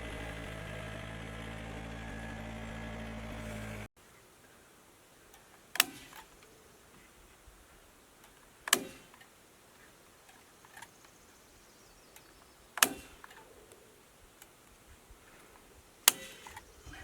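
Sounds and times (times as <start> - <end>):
strikes into wood: 8.7 - 9.1, 12.8 - 13.3.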